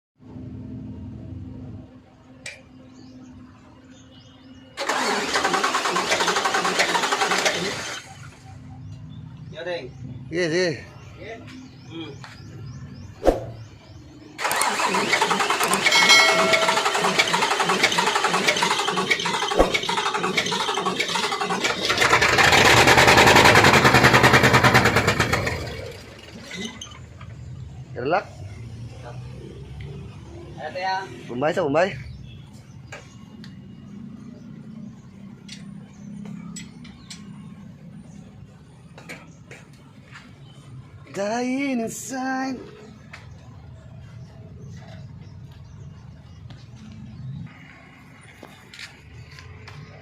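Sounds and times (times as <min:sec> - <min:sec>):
diesel engine cranking: 0:04.8 - 0:08.5, 0:13.7 - 0:27.7.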